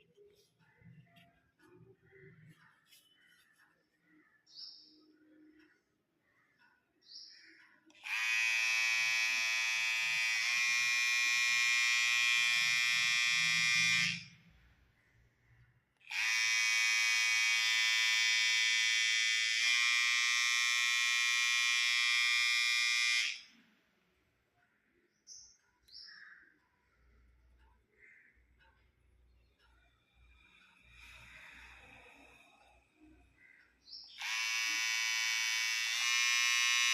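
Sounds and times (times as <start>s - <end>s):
electric hair trimmer buzzing: 8.0s - 14.4s, 16.0s - 23.6s, 34.2s - 36.9s.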